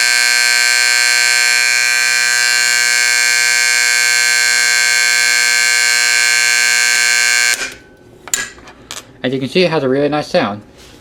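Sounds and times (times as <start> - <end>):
vibrating alarm horn: 0.0 - 7.8.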